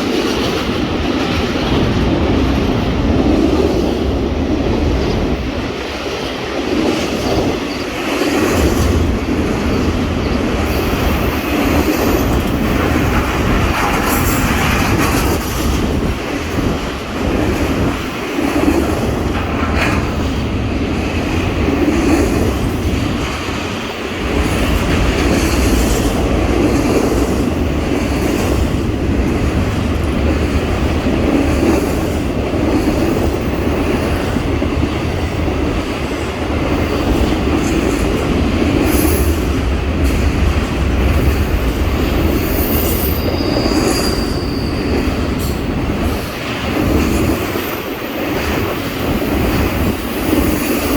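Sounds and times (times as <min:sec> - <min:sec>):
train wheels rumbling on rails: 0:00.0 - 0:50.9.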